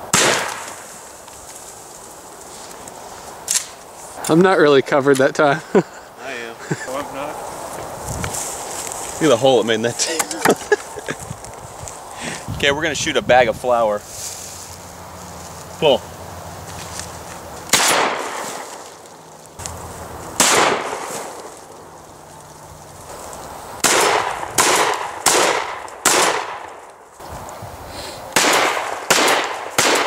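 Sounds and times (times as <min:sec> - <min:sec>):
shotgun shots echoing: 0:00.1 - 0:00.8, 0:17.7 - 0:18.7, 0:20.4 - 0:21.4, 0:23.8 - 0:26.7, 0:28.3 - 0:30.0.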